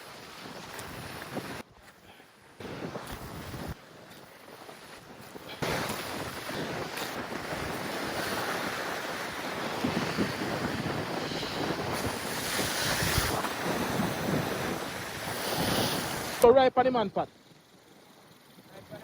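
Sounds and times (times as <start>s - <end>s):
wind buffeting microphone: 2.6s - 16.4s
sea waves washing on rocks: 4.6s - 16.4s.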